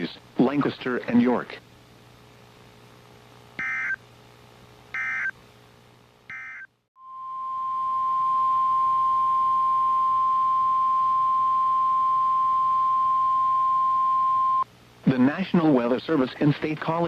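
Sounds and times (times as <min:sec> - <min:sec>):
buzzy digital data squawks: 0:03.6 - 0:04.0, 0:04.9 - 0:05.3, 0:06.3 - 0:07.6
steady alarm tone: 0:03.6 - 0:04.0, 0:05.0 - 0:05.3, 0:06.3 - 0:14.6.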